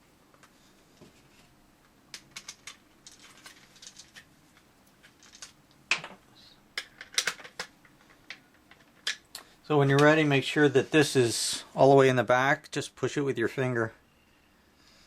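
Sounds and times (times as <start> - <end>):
plastic parts clicking and tapping: 6.8 - 10.1.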